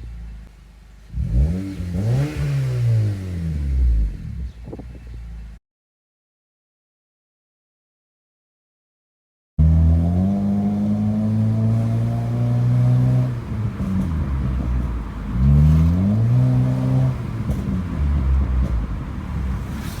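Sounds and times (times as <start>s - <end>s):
car exhaust revving and idling: 0.0s - 5.6s, 9.6s - 20.0s.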